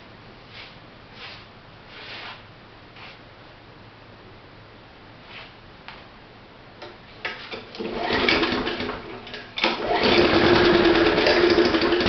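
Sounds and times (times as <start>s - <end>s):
lawnmower engine starting: 7.3s - 12.0s.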